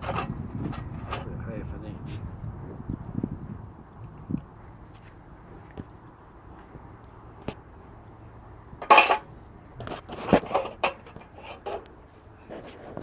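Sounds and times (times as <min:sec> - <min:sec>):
metal hand tools clinking and scraping: 0:00.0 - 0:01.3, 0:08.8 - 0:09.3, 0:10.1 - 0:11.9.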